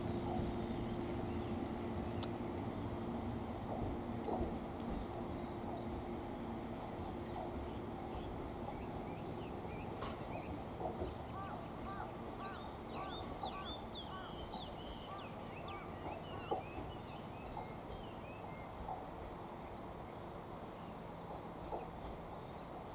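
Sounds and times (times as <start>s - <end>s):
insects buzzing: 0.0s - 22.9s.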